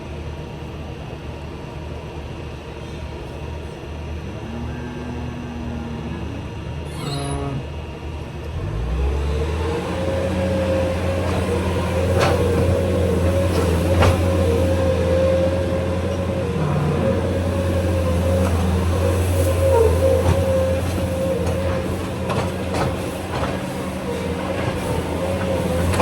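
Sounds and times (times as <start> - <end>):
steady whine: 3.2 - 8.6
heavy vehicle engine running: 3.2 - 26.0.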